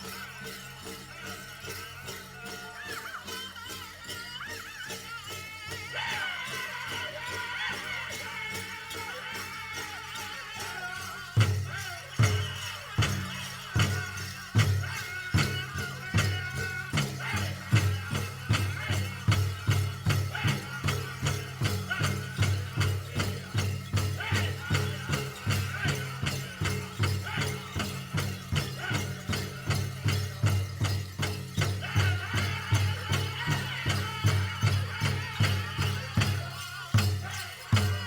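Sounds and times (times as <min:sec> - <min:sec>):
drum group singing: 0:00.0 - 0:38.0
jingling bells: 0:00.0 - 0:38.0
big drum beating: 0:11.4 - 0:37.2.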